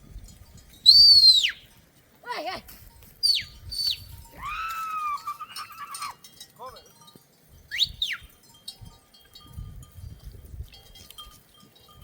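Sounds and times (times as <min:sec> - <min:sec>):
shepherd's loud whistles: 0:00.8 - 0:01.6, 0:03.2 - 0:04.1.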